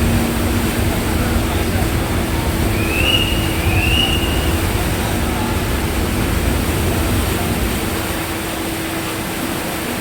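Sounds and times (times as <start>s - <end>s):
ferry engine hum: 0.0s - 10.0s
water noise: 0.0s - 10.0s
wind: 0.0s - 10.0s
high whistle-like tone: 2.8s - 4.5s.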